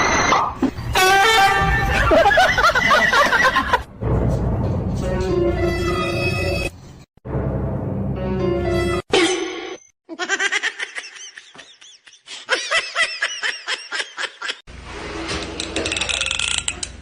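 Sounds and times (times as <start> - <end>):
person laughing: 10.1 - 14.6.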